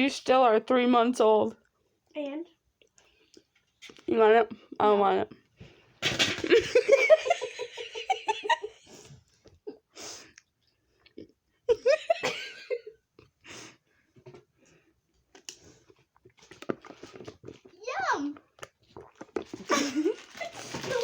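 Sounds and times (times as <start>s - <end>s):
person laughing: 11.7s - 12.9s.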